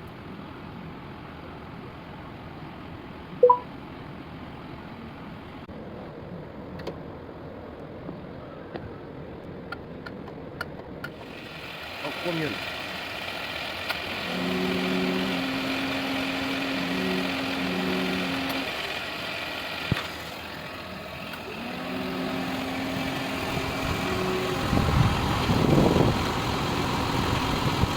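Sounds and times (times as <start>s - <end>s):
car engine idling: 11.1s - 27.9s.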